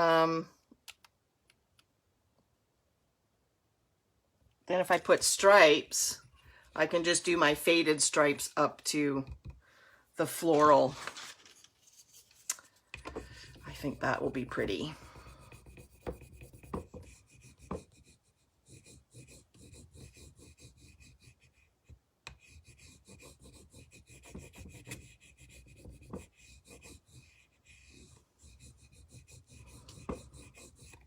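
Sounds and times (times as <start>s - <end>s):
rubbing and scraping on surface: 10.3s - 31.0s.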